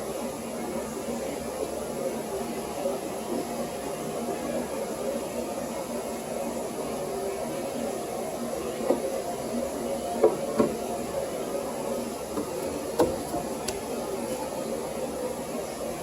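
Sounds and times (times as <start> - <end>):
steady background hum: 0.0 - 16.0
tools knocking and clicking: 12.4 - 13.8.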